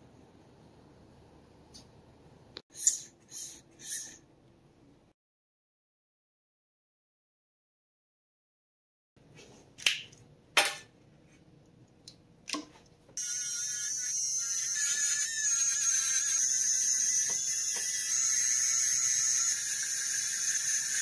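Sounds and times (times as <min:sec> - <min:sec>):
rotary tool whining: 0:13.2 - 0:21.0.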